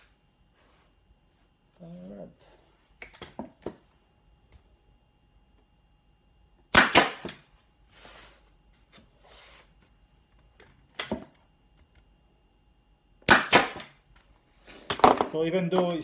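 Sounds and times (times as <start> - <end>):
nail gun clacking: 6.8 - 7.4, 13.3 - 13.9.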